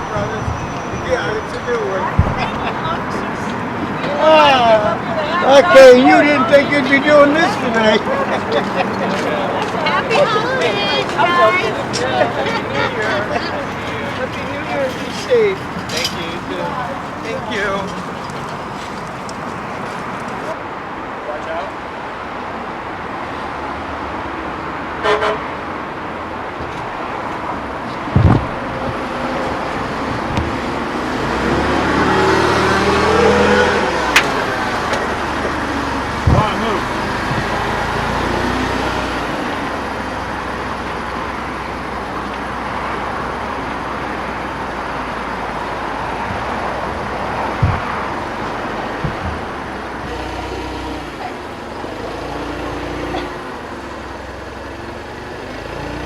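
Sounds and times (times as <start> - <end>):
car horn tooting: 0.0 - 20.5, 25.0 - 25.5
street traffic: 0.0 - 56.0.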